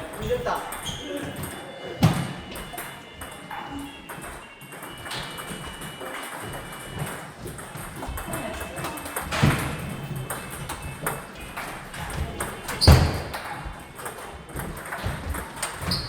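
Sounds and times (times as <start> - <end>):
table tennis ball hitting paddles: 0.0 - 16.0.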